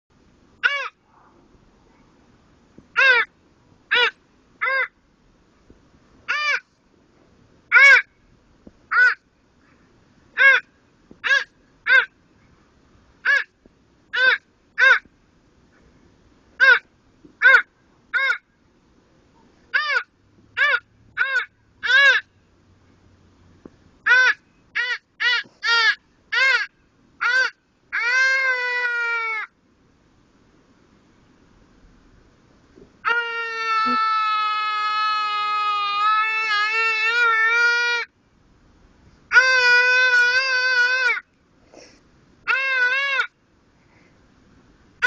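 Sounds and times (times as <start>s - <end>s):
harsh caw-like bird calls: 0.6s - 1.1s, 3.0s - 3.3s, 3.9s - 5.0s, 6.3s - 6.7s, 7.7s - 8.2s, 8.9s - 12.2s, 13.2s - 15.1s, 16.6s - 18.5s, 19.7s - 22.3s, 24.0s - 29.5s, 42.5s - 43.4s.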